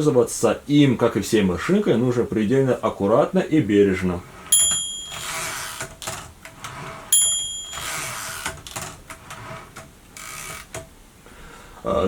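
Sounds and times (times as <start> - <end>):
typewriter carriage bell: 4.5 - 9.0
typewriter carriage ratcheting: 4.5 - 10.9.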